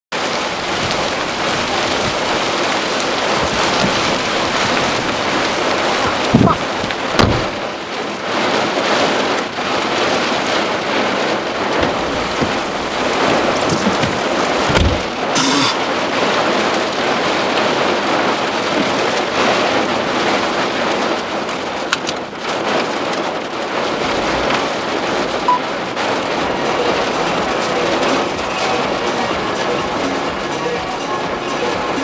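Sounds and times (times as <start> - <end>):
heavy rain: 0.1 - 32.0
strong wind: 0.2 - 9.0, 10.2 - 22.9
low thumps: 0.6 - 7.6, 11.8 - 15.4.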